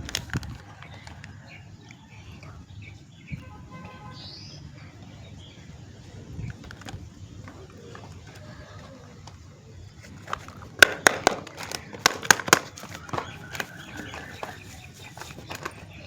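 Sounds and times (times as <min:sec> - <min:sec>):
faint background ambience: 0:00.0 - 0:16.0
soap packaging crackling: 0:07.6 - 0:16.0.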